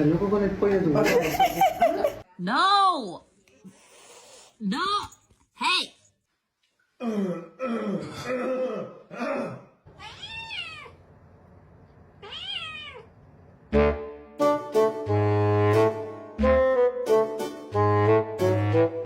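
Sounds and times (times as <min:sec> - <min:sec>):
cat yowling and meowing: 0:10.0 - 0:11.0, 0:12.2 - 0:13.1
saxophone music: 0:13.7 - 0:19.0.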